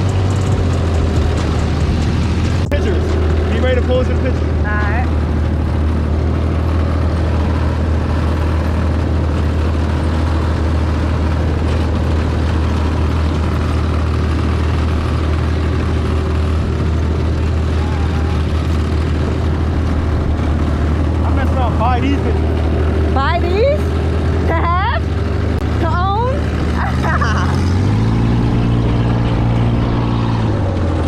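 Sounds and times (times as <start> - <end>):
road and wind noise: 0.0 - 31.0
vehicle engine drone: 0.0 - 31.0.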